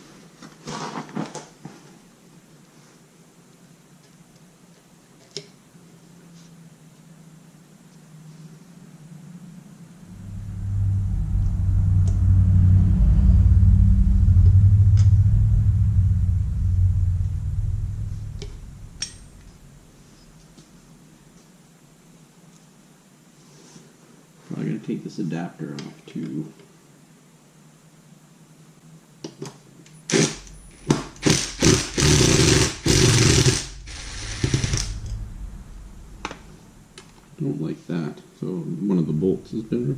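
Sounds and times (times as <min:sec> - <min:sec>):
machine motor rumbling hum: 0:09.4 - 0:21.1, 0:30.4 - 0:37.4
power tool undoing bolts: 0:30.1 - 0:34.8.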